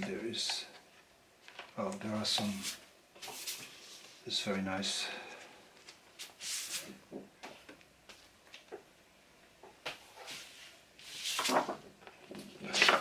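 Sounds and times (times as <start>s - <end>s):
paper and card rustling: 1.4s - 4.1s, 10.3s - 11.8s.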